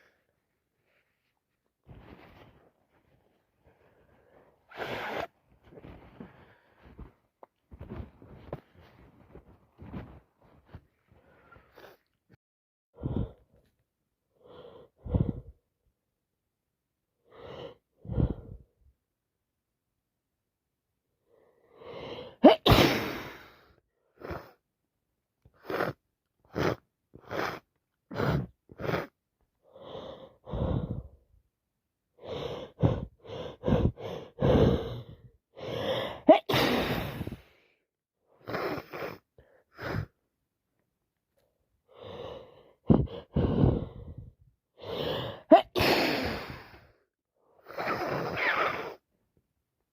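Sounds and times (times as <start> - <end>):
gasping in-breaths: 14.4 - 15.6, 27.2 - 31.3, 32.2 - 40.2, 41.9 - 47.0
woman sneezing: 22.4 - 23.5, 36.2 - 37.4, 45.4 - 46.6.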